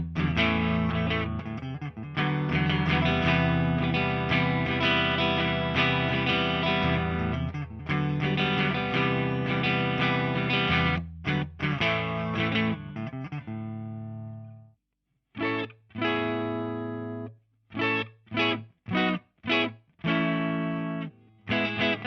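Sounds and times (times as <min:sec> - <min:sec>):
short stabbed guitar chords: 0:00.0 - 0:14.5
electric guitar chords: 0:00.0 - 0:14.6, 0:15.4 - 0:22.0.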